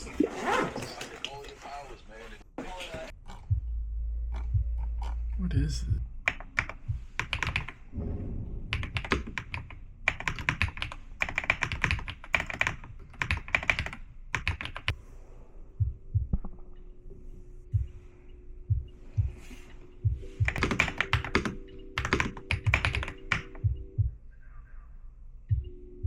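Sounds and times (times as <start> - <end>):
typing on computer keyboard: 6.3 - 7.8, 8.8 - 14.9, 20.4 - 23.6.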